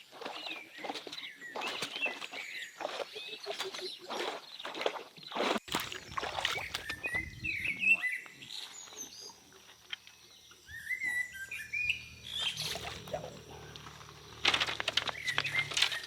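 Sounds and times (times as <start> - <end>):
birds chirping: 5.6 - 16.0
low steady hum: 5.7 - 16.0.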